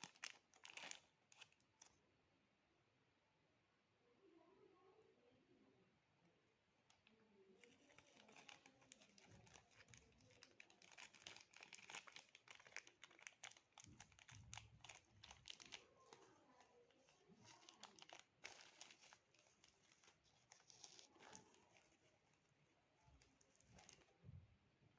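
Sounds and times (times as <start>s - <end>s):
packaging crinkling and rustling: 0.0s - 1.9s, 7.0s - 24.2s.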